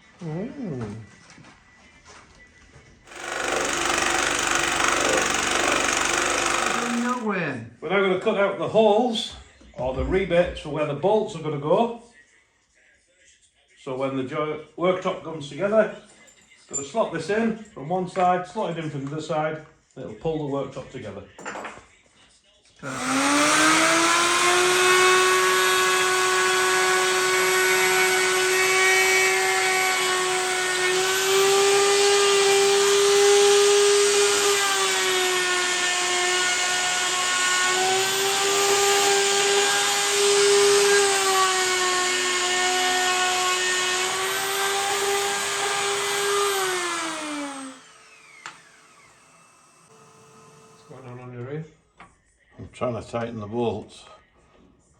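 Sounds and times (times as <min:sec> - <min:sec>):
electric router cutting wood: 0:03.1 - 0:07.3, 0:22.8 - 0:51.1.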